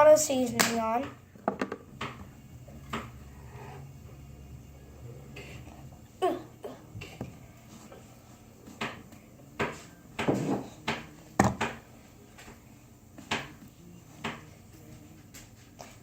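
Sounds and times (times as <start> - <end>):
kitchen utensils knocking and clicking: 1.0 - 2.2.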